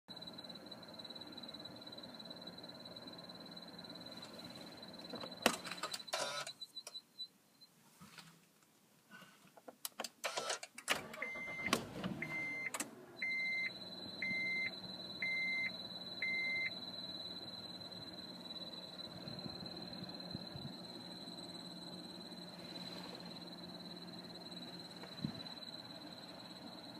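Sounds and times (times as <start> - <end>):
high-pitched engine whine: 0.1 - 6.5, 11.1 - 26.9
low hum: 13.1 - 26.9.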